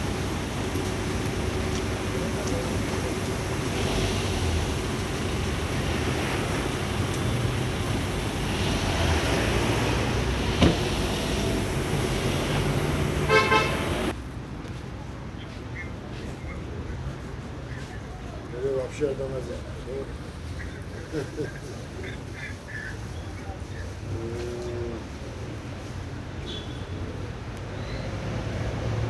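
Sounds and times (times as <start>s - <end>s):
street traffic: 0.0s - 29.0s
car horn toots: 10.6s - 14.1s.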